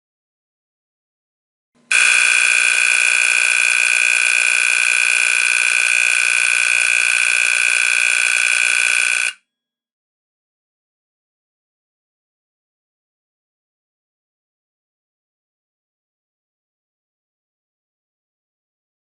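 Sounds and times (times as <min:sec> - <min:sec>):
fire alarm horn buzzing: 0:01.9 - 0:09.5.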